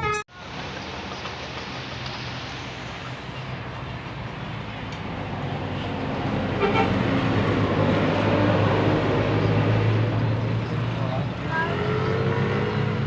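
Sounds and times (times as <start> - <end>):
bus horn tones: 0.0 - 0.3, 5.8 - 8.0
bus engine: 0.0 - 13.0.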